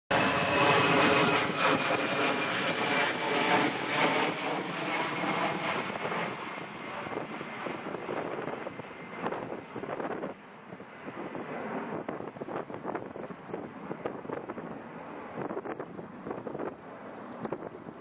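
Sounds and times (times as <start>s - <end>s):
airliner engine and air rush: 0.1s - 18.0s.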